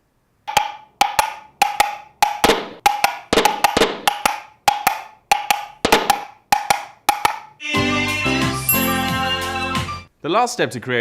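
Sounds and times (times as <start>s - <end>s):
hollow clip-clop knocks: 0.5s - 7.5s.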